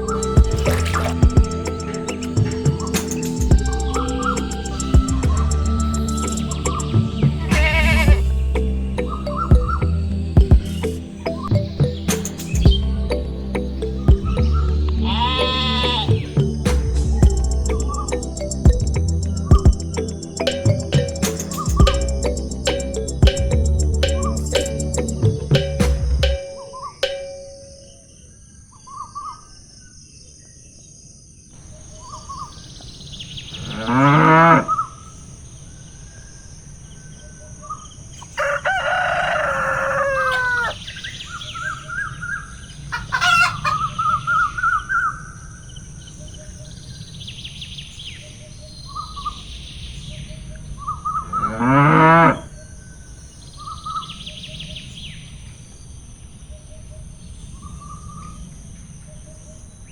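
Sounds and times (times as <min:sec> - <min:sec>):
loud animal call: 0:00.0 - 0:08.4, 0:15.0 - 0:16.4, 0:38.3 - 0:40.9, 0:42.8 - 0:45.3
small birds chirping: 0:00.0 - 0:25.9, 0:27.8 - 0:51.5, 0:52.4 - 0:59.9
cow mooing: 0:15.0 - 0:16.2, 0:33.6 - 0:34.8, 0:51.4 - 0:52.5.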